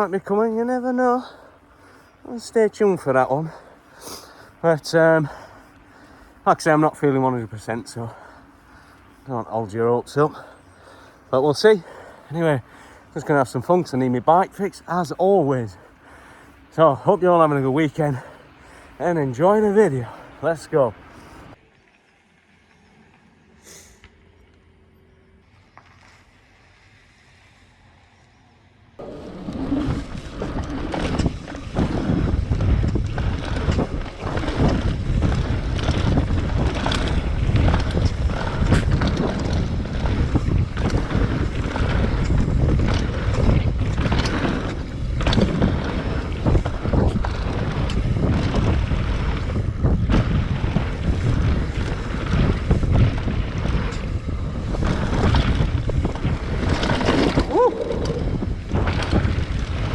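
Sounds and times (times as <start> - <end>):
bike rattles and knocks: 29.0 - 59.9
tyre rumble: 29.0 - 59.9
wind buffeting microphone: 29.0 - 59.9.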